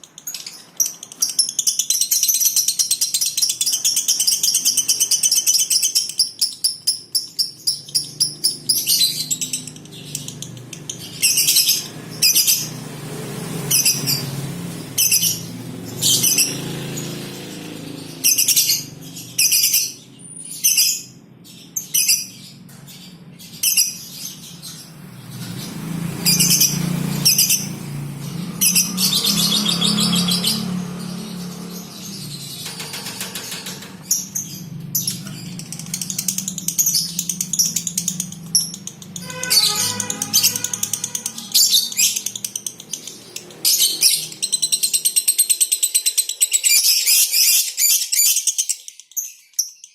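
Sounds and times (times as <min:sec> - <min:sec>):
lovebirds chattering: 0:00.2 - 0:48.6
rattling run of chirps: 0:22.6 - 0:44.9.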